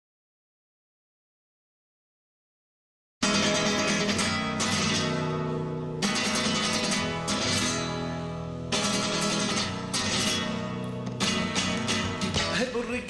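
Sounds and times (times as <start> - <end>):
strummed acoustic guitar music: 3.2 - 13.0.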